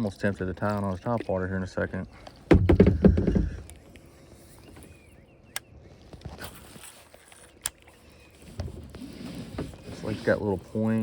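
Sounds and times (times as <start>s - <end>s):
low thumps on kayak: 2.5s - 3.7s.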